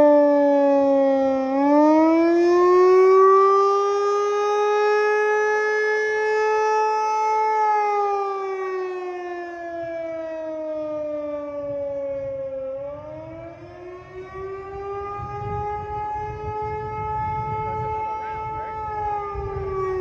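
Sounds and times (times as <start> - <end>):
warning siren wailing: 0.0 - 20.0.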